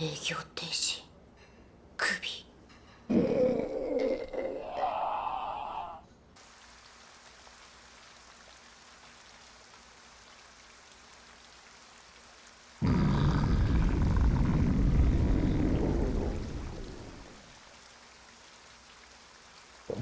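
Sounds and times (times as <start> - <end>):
low rumbling stomach growl: 3.1 - 6.0, 12.8 - 17.4
faint hiss: 6.4 - 20.0.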